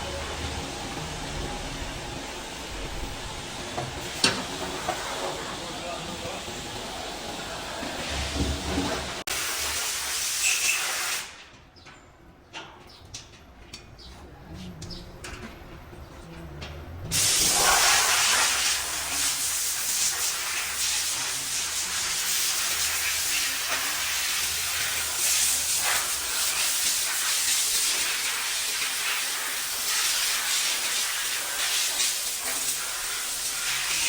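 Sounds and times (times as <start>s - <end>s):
high hiss of pressurised jet: 17.2s - 34.0s.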